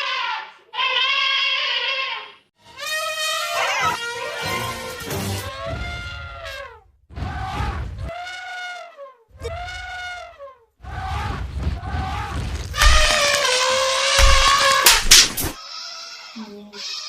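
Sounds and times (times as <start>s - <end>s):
elephant trumpeting: 2.8s - 6.7s, 12.0s - 16.3s.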